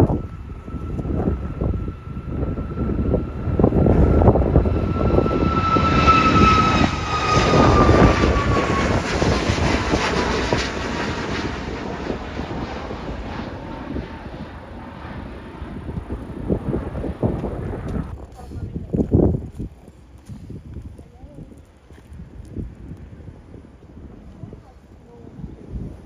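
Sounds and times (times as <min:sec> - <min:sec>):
airliner passing: 0:00.0 - 0:18.8.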